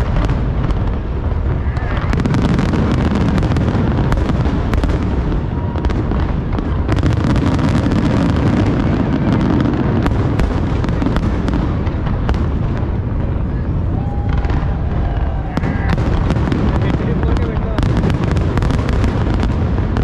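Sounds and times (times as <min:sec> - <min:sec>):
fireworks booms and crackles: 0:00.0 - 0:20.0.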